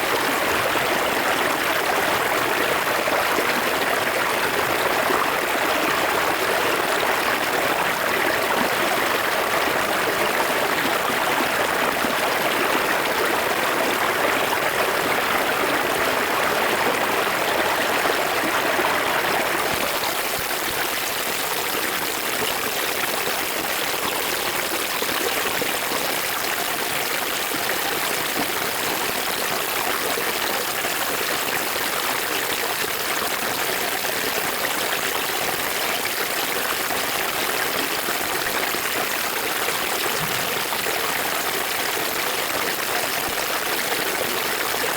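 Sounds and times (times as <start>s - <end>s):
river water running and splashing: 36.8s - 44.9s.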